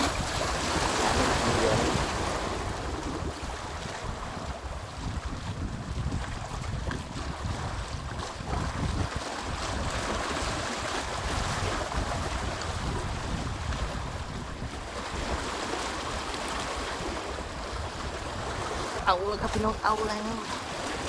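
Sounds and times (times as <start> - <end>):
sea surf washing onto beach: 0.0 - 21.0
wind buffeting microphone: 0.0 - 21.0.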